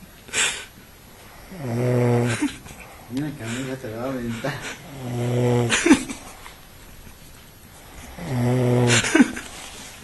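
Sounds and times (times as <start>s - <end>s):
man snoring loudly: 1.3s - 2.6s, 4.8s - 6.1s, 7.8s - 9.4s.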